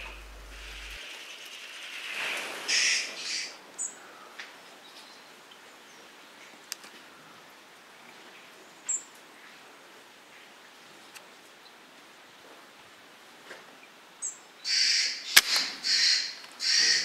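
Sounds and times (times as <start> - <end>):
faint background hiss: 0.0 - 14.6
harsh raspy bird calls: 14.7 - 17.0.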